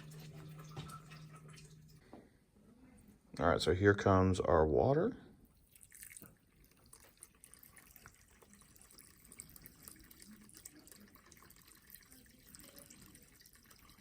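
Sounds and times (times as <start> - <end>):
water trickling: 0.0 - 2.0, 5.4 - 14.0
small drips: 5.4 - 14.0.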